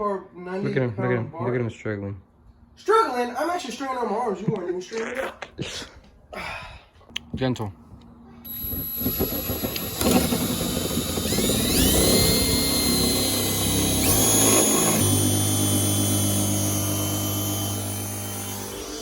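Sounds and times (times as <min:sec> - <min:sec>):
power drill drilling into metal: 0:08.5 - 0:19.0.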